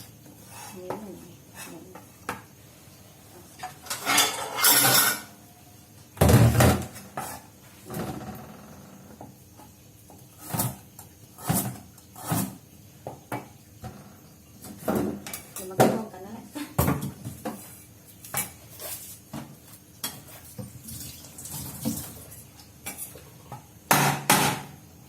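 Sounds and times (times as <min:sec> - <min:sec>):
dishes and utensils clattering: 0:03.4 - 0:05.5, 0:16.7 - 0:24.8
scraping rustle: 0:17.6 - 0:20.6.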